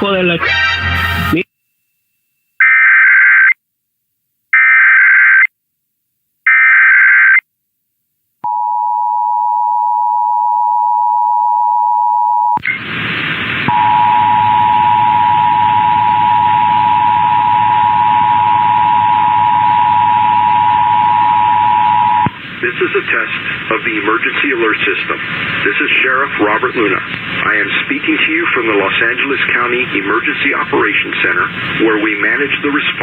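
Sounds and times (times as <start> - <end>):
static hiss: 12.6 - 33.0
two-tone attention signal: 13.7 - 22.3.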